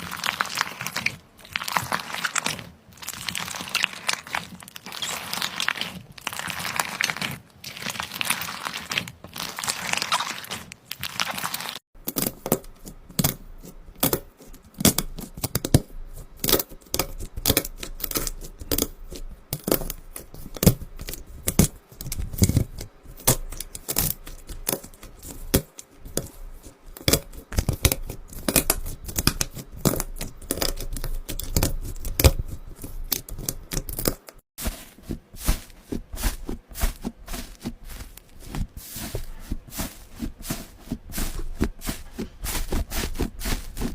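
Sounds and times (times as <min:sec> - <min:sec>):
slime crackling and popping: 0:00.0 - 0:34.4.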